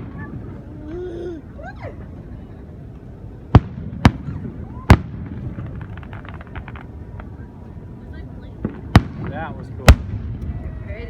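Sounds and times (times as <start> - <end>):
fireworks crackles: 1.9 - 11.0
fireworks booms: 3.5 - 7.6, 8.5 - 11.0.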